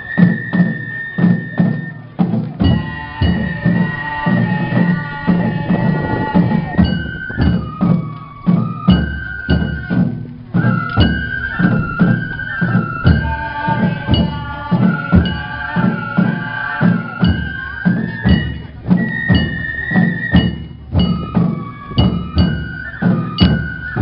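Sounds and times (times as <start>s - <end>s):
bamboo flute melody: 0.0s - 24.0s
taiko drums beating: 0.0s - 24.0s
sharp struck percussion: 17.2s - 24.0s.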